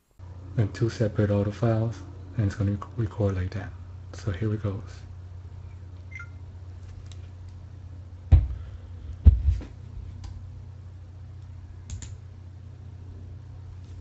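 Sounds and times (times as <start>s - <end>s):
low electrical hum: 0.0s - 14.0s
loud thumps: 8.3s - 8.6s.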